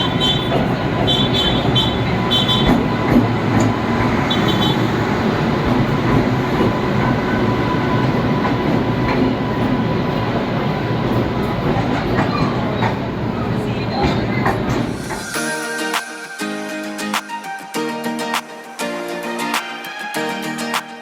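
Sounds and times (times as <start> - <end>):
train rumbling along track: 0.0 - 15.3.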